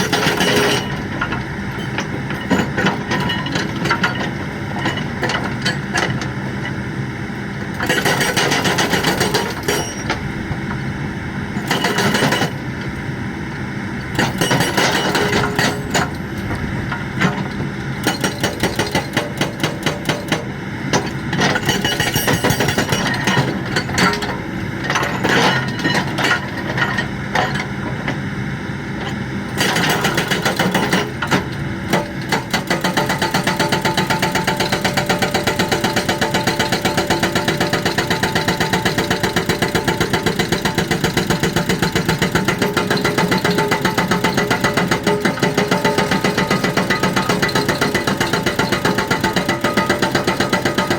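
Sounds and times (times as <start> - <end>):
hydraulic breaker hammering: 0.0 - 6.7, 7.6 - 28.1, 29.0 - 50.9
excavator engine running: 0.0 - 19.4, 20.7 - 50.9.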